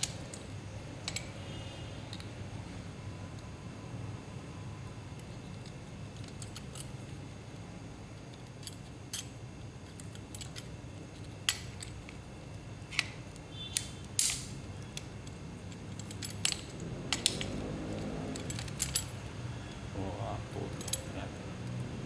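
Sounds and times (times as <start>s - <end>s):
small parts clicking and knocking: 0.0s - 1.5s, 5.1s - 19.9s, 20.6s - 21.9s
faint low hum: 0.0s - 22.0s.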